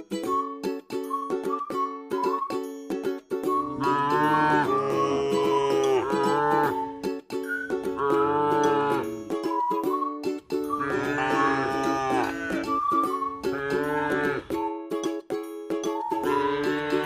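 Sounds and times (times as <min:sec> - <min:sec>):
background music: 0:00.0 - 0:17.0
cattle mooing: 0:03.6 - 0:06.9, 0:08.0 - 0:09.1, 0:10.8 - 0:12.8, 0:13.4 - 0:14.5, 0:16.3 - 0:17.0.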